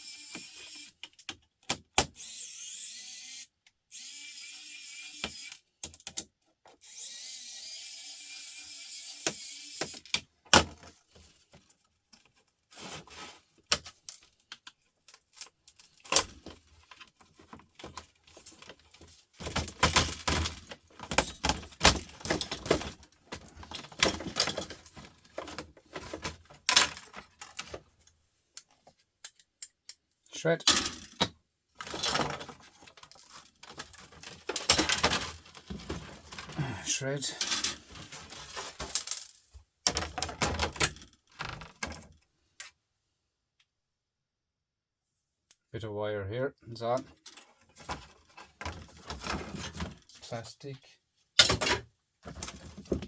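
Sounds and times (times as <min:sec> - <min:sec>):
laptop parts clattering: 0:13.7 - 0:27.9.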